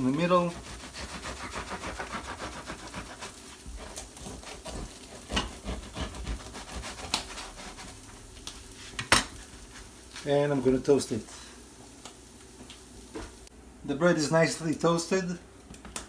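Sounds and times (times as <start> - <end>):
knife sawing through bread: 0.0 - 8.2.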